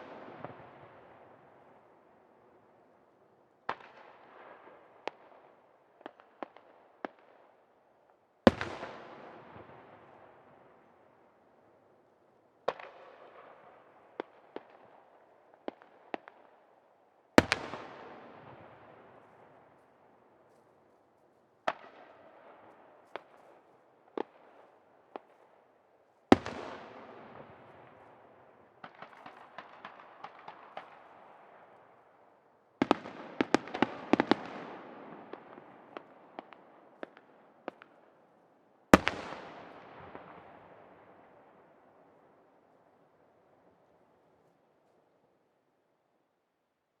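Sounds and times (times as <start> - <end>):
fireworks crackling pops: 21.6 - 25.5.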